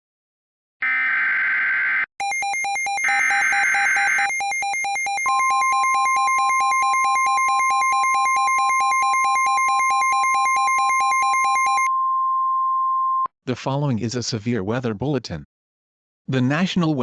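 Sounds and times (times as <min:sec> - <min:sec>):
pulsing electronic beep: 0:02.2 - 0:13.3.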